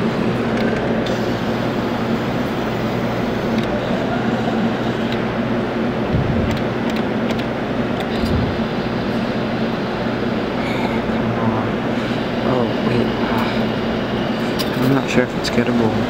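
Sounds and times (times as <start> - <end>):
machine electric hum: 0.0 - 16.0
noisy background: 0.0 - 16.0
low thumps: 6.0 - 7.1, 8.1 - 9.4.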